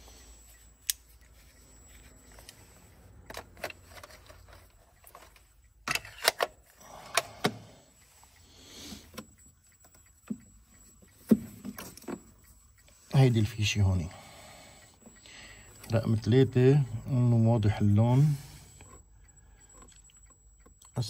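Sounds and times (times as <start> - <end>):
small clicks of multimeter probes: 0.0 - 7.3, 7.9 - 13.8, 14.8 - 21.0.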